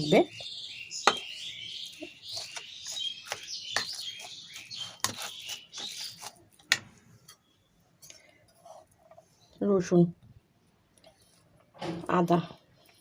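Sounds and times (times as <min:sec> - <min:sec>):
small birds chirping: 0:00.0 - 0:06.5.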